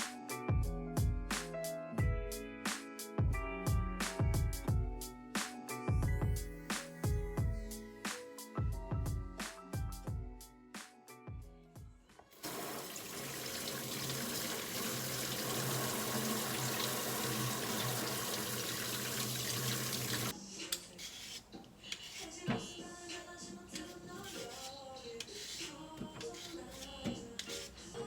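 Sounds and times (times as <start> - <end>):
tap water running into sink: 12.4 - 20.3.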